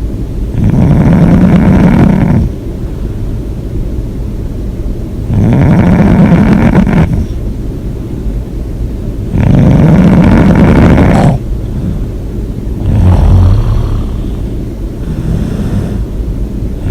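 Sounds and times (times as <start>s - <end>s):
person snoring loudly: 0.6s - 2.5s, 5.3s - 7.3s, 9.4s - 12.0s, 12.8s - 16.1s.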